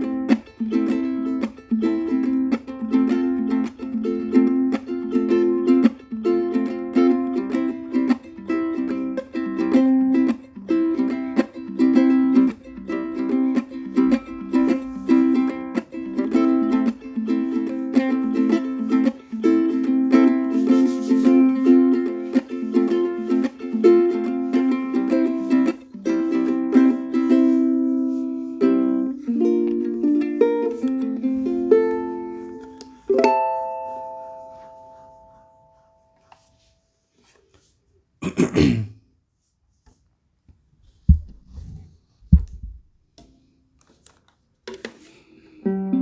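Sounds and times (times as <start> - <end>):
ukulele playing: 0.0 - 36.8, 44.6 - 46.0
short scrape: 20.3 - 23.6, 41.3 - 42.7
low thumps: 40.8 - 43.0.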